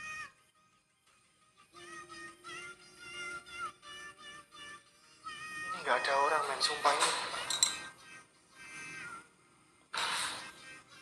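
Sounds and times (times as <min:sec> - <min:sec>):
faint music held tones: 0:00.0 - 0:11.0.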